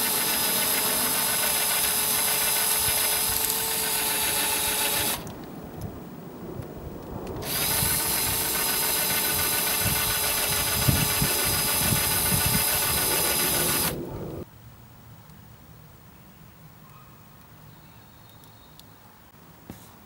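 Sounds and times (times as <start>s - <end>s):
electric power tool running: 0.0s - 5.3s, 7.4s - 14.4s.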